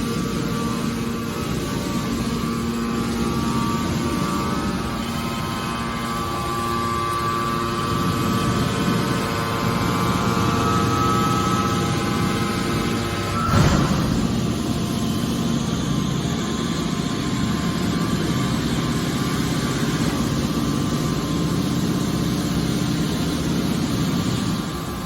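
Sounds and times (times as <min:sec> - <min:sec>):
baler machine hum: 0:00.0 - 0:25.0
loud bang: 0:13.1 - 0:15.5.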